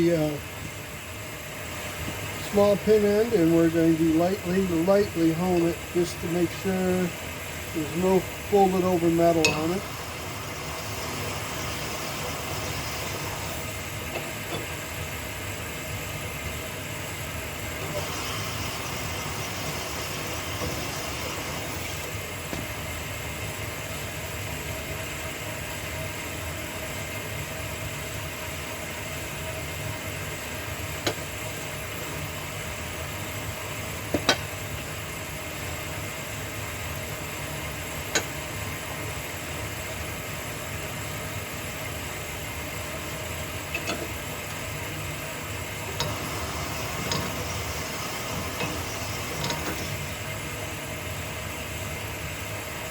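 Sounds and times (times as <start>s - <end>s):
honing machine motor drone: 7.7s - 13.9s, 17.7s - 22.2s, 45.7s - 50.5s.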